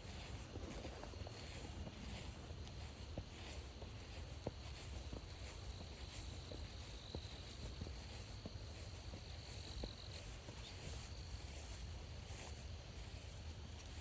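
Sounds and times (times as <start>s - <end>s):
footsteps on trail: 0.0s - 14.0s
crickets trilling: 2.7s - 13.9s.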